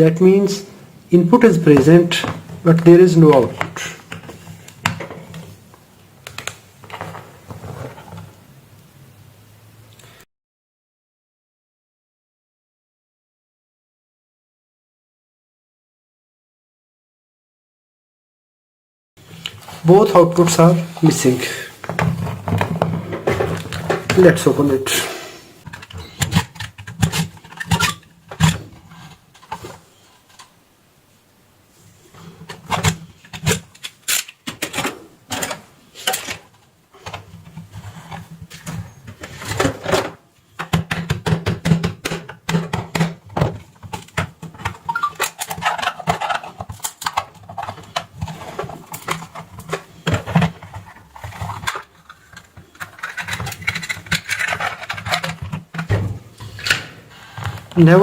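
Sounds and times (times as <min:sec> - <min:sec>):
plastic scraping and rubbing: 0:01.4 - 0:08.4, 0:19.2 - 0:30.6, 0:31.8 - 0:58.0.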